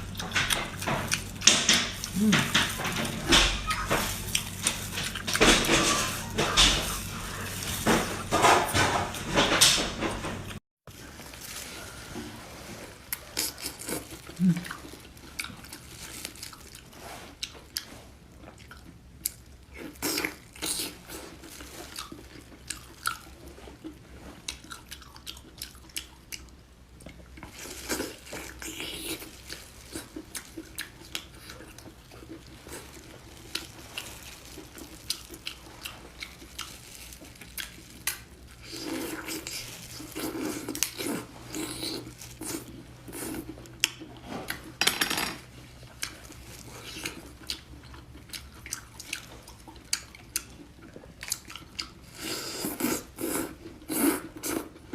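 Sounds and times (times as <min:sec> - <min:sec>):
person chewing with wet mouth sounds: 0:11.4 - 0:44.7, 0:45.7 - 0:54.9.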